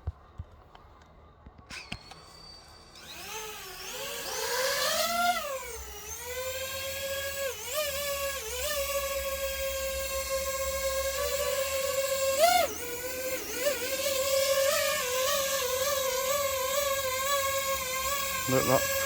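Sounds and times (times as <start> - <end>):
drone motors whining: 1.6 - 19.0.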